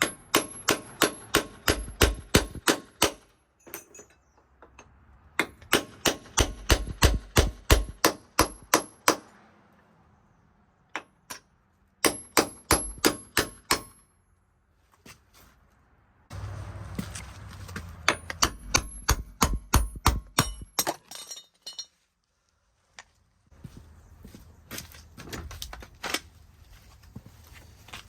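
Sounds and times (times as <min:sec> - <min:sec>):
hammer striking steel: 0:00.0 - 0:04.1, 0:05.4 - 0:09.3, 0:11.0 - 0:14.1, 0:17.7 - 0:21.0.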